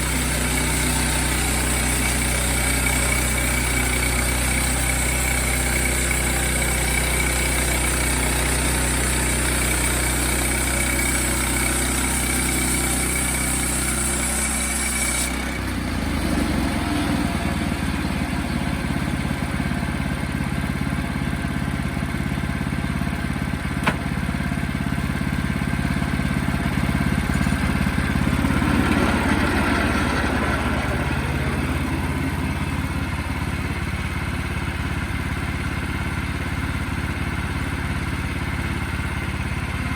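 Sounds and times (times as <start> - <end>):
sawmill engine running: 0.0 - 39.9
sharp click: 23.8 - 24.1.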